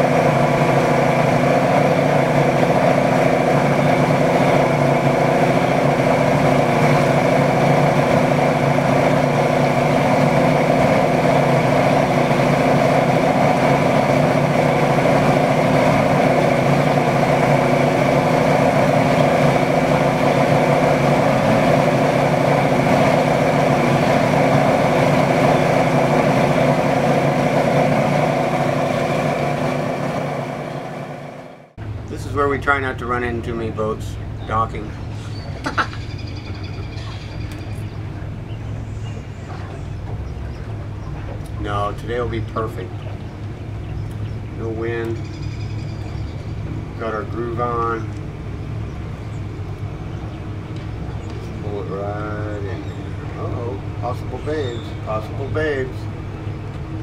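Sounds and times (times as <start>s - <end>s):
boat motor running: 0.0s - 57.0s.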